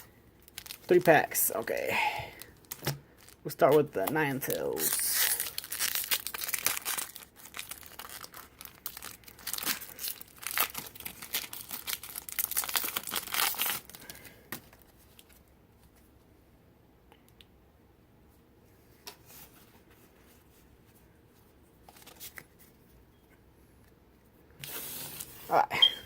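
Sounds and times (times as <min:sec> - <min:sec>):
foil wrapper crinkling and tearing: 0:00.4 - 0:15.4.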